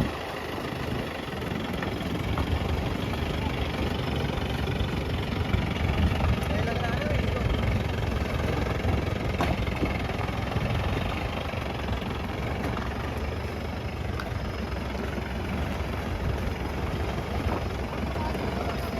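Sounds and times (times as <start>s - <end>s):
engine idling low rumble: 0.0s - 18.9s.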